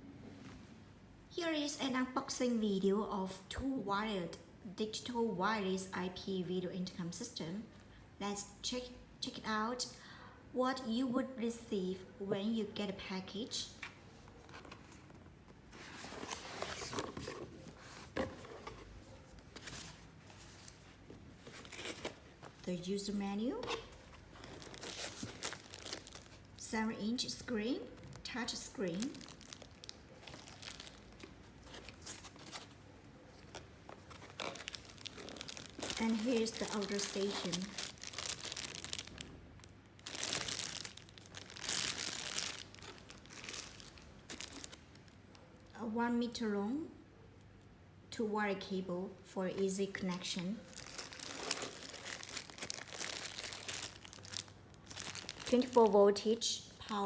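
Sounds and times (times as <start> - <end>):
packaging rustling and scraping: 14.1 - 22.6, 23.6 - 26.6, 28.8 - 45.2, 50.7 - 56.0.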